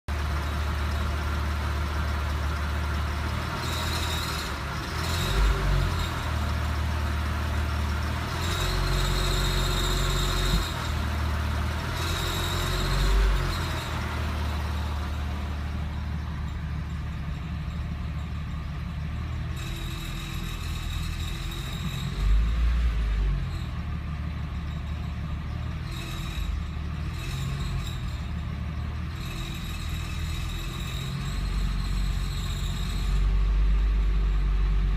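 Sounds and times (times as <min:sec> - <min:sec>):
car engine running: 0:00.1 - 0:23.1.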